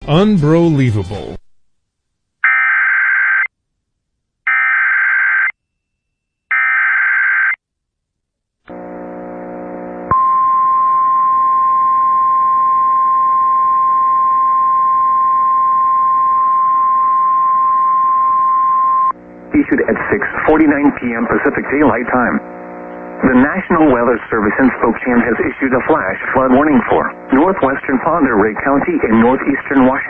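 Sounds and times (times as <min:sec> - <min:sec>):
low buzz: 0:08.7 - 0:19.6, 0:22.4 - 0:23.4.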